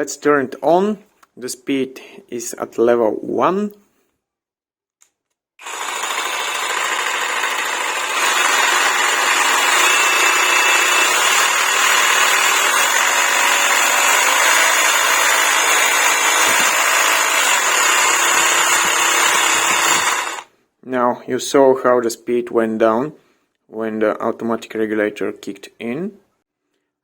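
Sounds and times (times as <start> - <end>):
cordless jigsaw running: 5.6 - 20.5.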